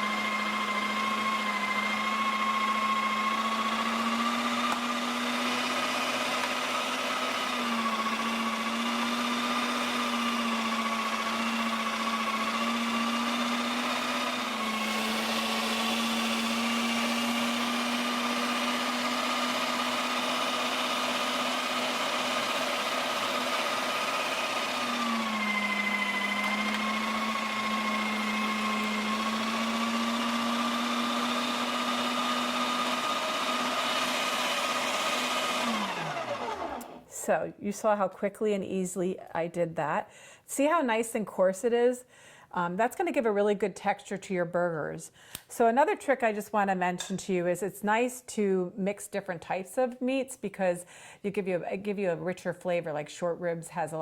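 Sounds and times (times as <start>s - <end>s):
meat grinder motor humming: 0.0s - 37.0s.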